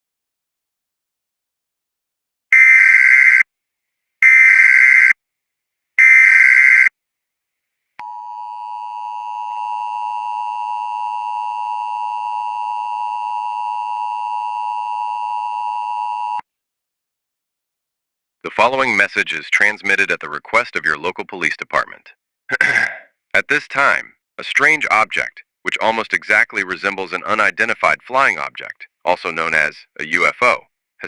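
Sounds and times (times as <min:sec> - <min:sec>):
steady two-tone alert signal: 0:08.0 - 0:16.4.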